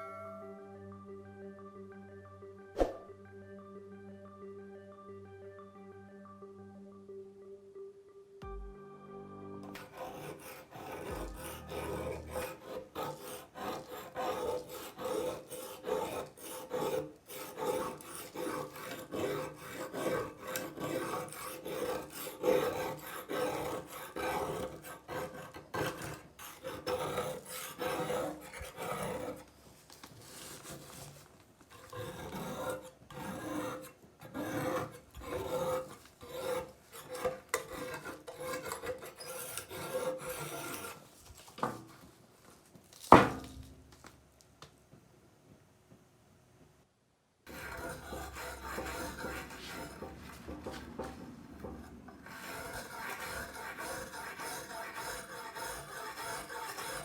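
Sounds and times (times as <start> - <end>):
file rasping on steel blade: 9.7 - 29.4, 31.7 - 41.1, 47.5 - 57.0.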